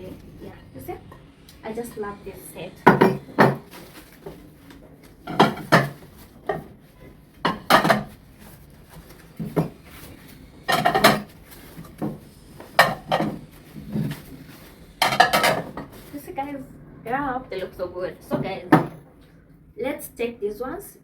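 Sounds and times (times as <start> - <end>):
plates clinking and clattering: 2.8 - 4.4, 5.2 - 16.1.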